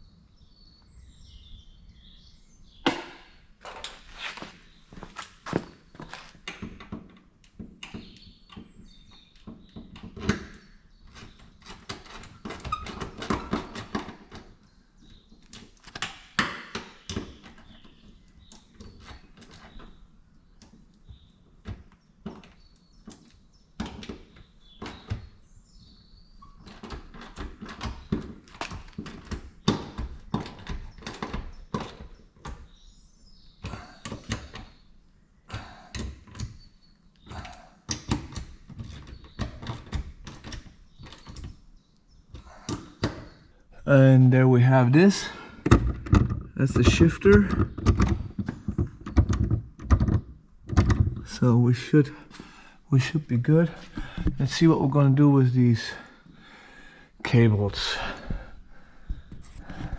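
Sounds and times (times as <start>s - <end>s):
hand tools and metal clanking: 44.5s - 54.7s.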